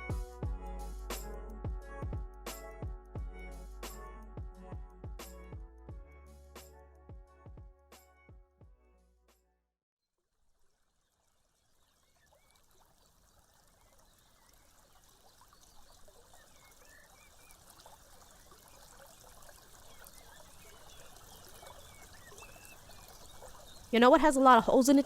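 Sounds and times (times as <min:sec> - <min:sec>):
trickling running water: 0:10.2 - 0:25.0.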